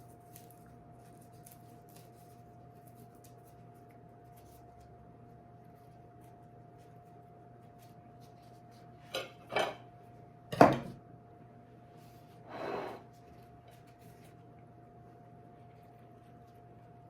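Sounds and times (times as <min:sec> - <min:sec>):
dishes and utensils clattering: 0:09.1 - 0:09.8.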